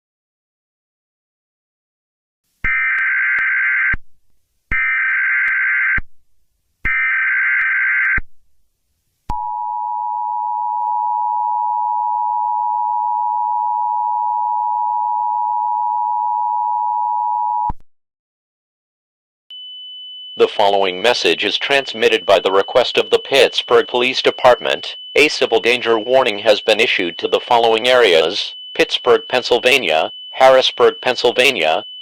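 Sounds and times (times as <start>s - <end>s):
warbling digital data tones: 20.4s - 31.9s
two-tone attention signal: 20.4s - 32.0s.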